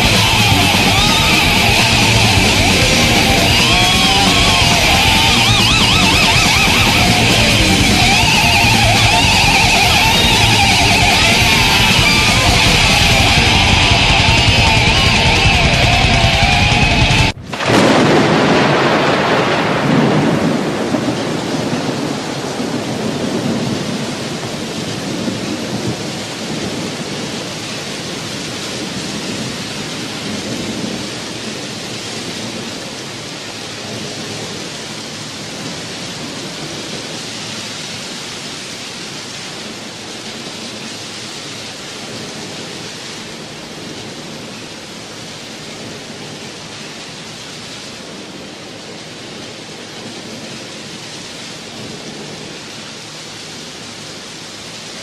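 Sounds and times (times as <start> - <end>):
thunder rumble: 0.0 - 33.0
heavy rain: 0.0 - 55.0.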